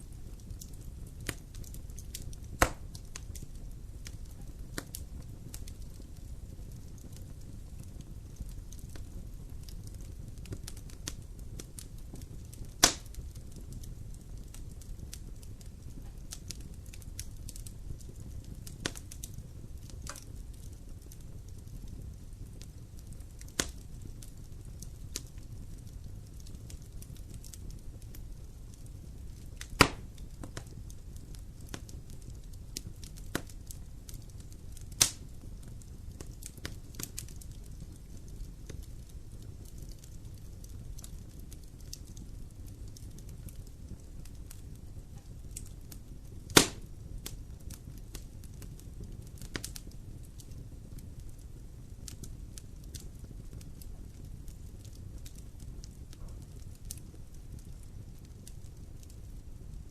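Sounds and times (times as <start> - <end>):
loud fire pops: 0.0 - 59.8
fire crackling in fireplace: 0.0 - 59.9.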